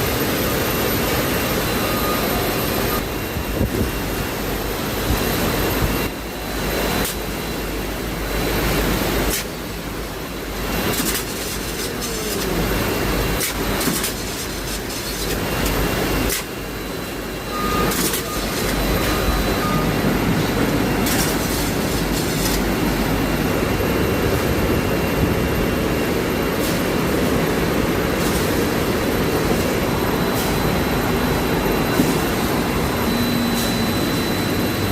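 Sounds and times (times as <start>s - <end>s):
bottling machinery running: 0.0s - 34.9s.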